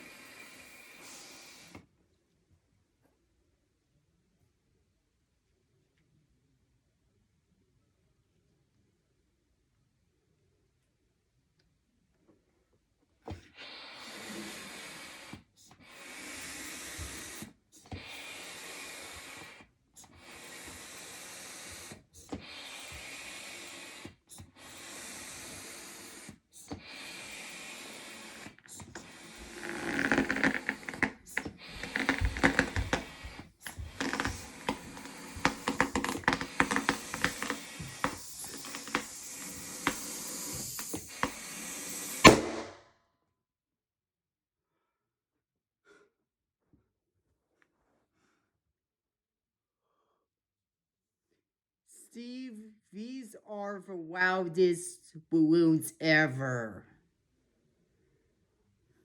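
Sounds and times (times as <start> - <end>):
hand pump air strokes: 0.0 - 1.8, 13.6 - 42.7
balloon rubber crackling and squeaking: 13.8 - 42.8.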